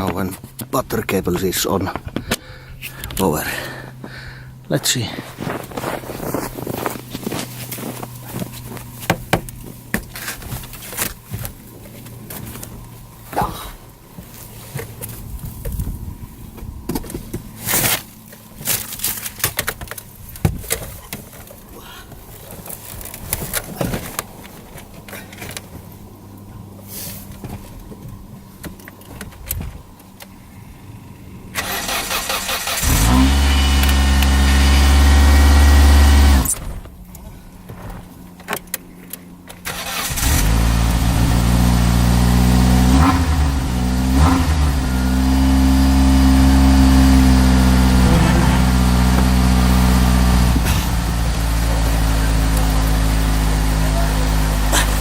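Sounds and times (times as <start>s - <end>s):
car engine cranking and starting: 0.0s - 55.0s
engine revving: 30.9s - 36.8s, 39.6s - 55.0s.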